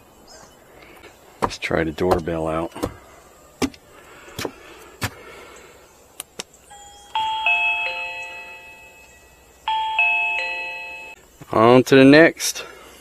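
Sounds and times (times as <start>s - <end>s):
doorbell electronic chime tune: 6.7s - 11.2s.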